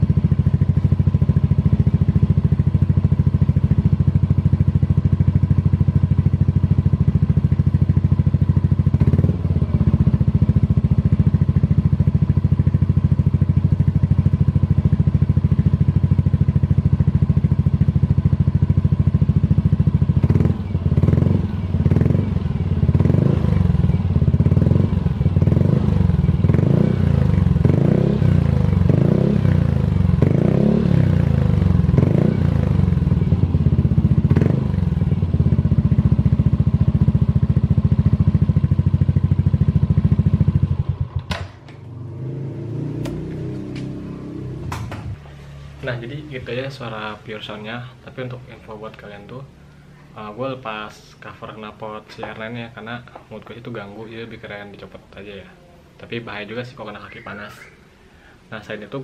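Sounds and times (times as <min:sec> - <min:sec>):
scooter engine idling: 0:00.0 - 0:59.0.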